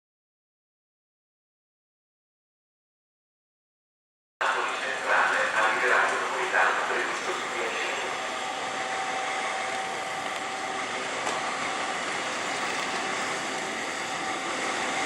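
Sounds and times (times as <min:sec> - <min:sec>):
train rushing in motion: 0:04.4 - 0:15.0.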